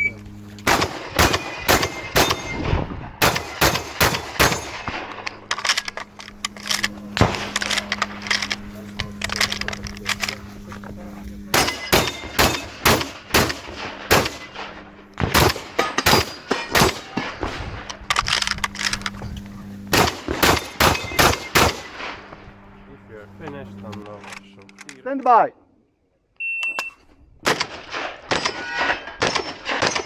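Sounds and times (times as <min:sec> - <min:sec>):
shotgun shots fired fast: 0:00.7 - 0:05.0, 0:11.5 - 0:17.8, 0:19.9 - 0:22.1.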